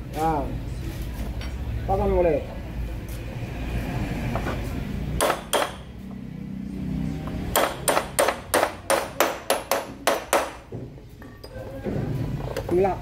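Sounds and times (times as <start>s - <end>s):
hammer tapping on metal: 5.2s - 5.9s, 7.3s - 10.9s.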